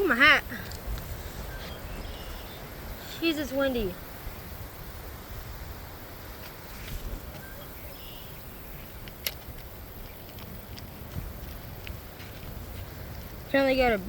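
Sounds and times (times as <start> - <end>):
wind buffeting microphone: 0.0 - 14.0
faint clicks: 0.5 - 1.1.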